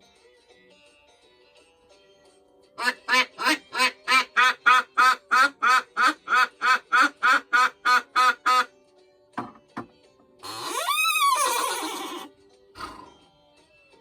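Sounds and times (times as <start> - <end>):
duck quacking: 2.8 - 8.7.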